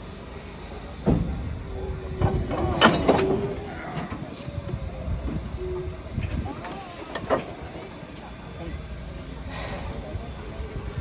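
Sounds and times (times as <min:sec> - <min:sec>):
train rumbling on rails: 0:00.0 - 0:11.0
metallic clanks and knocks: 0:02.2 - 0:04.3.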